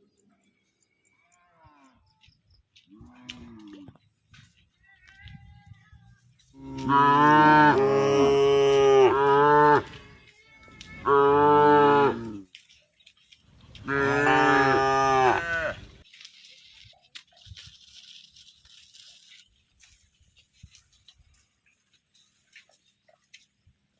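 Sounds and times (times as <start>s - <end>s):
cow mooing: 6.6s - 9.9s, 11.0s - 12.4s, 13.8s - 15.8s.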